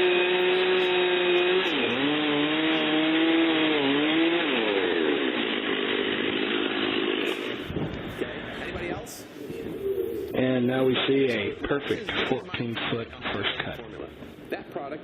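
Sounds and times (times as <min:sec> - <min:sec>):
chainsaw ripping log: 0:00.0 - 0:08.2.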